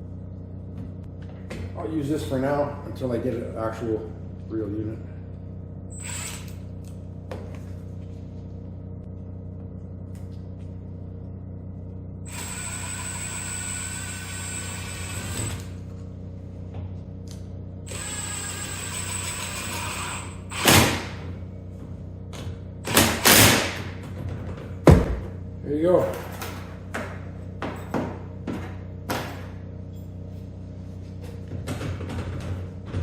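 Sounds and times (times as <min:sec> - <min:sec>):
steady low hum: 0:00.0 - 0:33.0
power drill running: 0:05.9 - 0:06.6, 0:12.2 - 0:15.8, 0:17.9 - 0:21.1.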